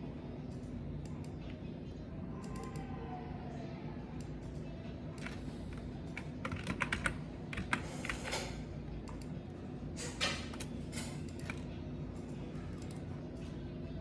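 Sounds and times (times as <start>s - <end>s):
computer keyboard typing: 5.2s - 9.3s.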